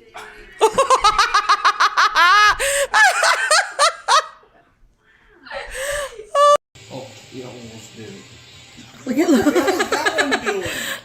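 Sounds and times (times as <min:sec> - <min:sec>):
person laughing hard: 0:00.6 - 0:04.4, 0:05.7 - 0:06.6.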